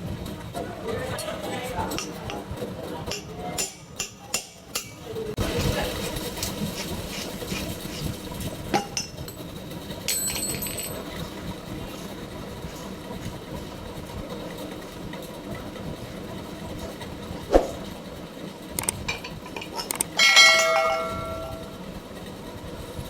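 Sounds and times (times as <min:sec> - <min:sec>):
metal ringing: 0:03.1 - 0:05.2, 0:10.1 - 0:11.1, 0:19.1 - 0:21.8
metal clinks and taps: 0:10.1 - 0:11.2, 0:18.8 - 0:21.7.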